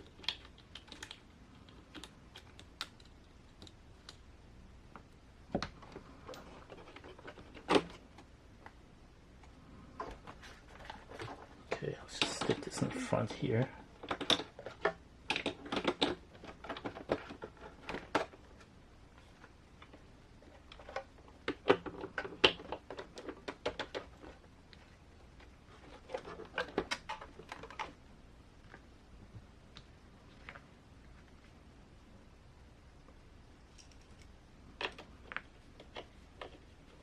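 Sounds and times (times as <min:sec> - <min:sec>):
small plastic clicks and knocks: 0:14.0 - 0:18.4.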